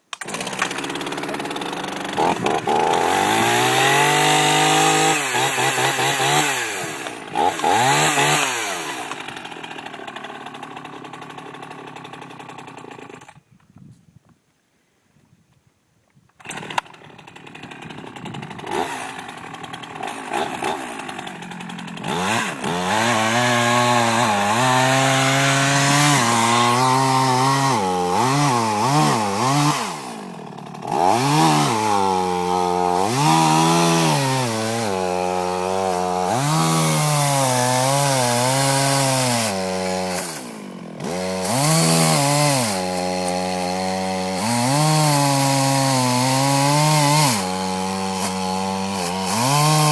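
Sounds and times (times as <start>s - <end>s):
chainsaw cutting wood: 0.0s - 13.5s, 16.3s - 49.9s.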